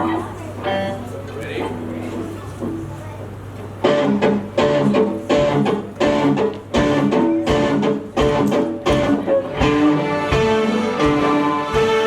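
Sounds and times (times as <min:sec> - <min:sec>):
strings playing pizzicato: 0:03.9 - 0:12.0.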